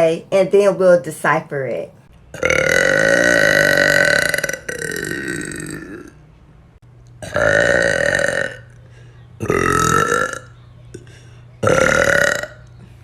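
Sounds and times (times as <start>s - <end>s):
woman burping loudly: 2.4s - 6.2s, 7.2s - 8.8s, 9.4s - 10.6s, 11.6s - 12.7s.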